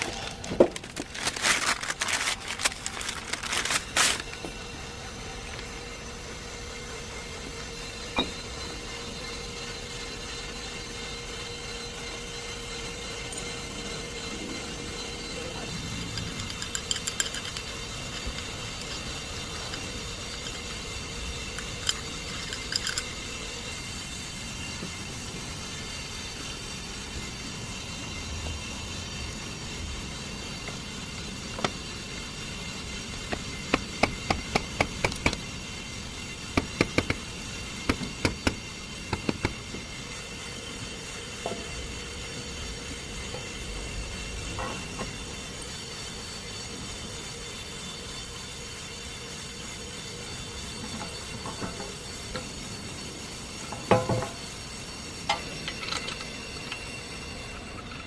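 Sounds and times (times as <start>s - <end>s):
faint high whine: 0.0s - 58.0s
mechanical hum: 0.0s - 58.0s.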